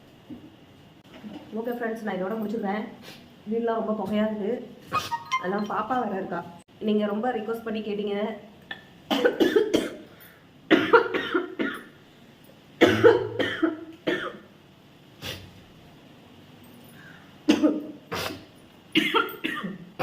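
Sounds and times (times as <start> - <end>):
person coughing: 9.1 - 10.1, 10.7 - 11.9, 12.8 - 14.4, 17.5 - 18.4, 19.0 - 19.9.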